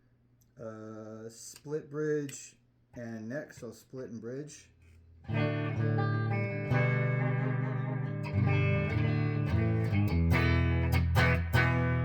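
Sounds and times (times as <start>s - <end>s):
electric guitar chords: 5.3s - 12.0s.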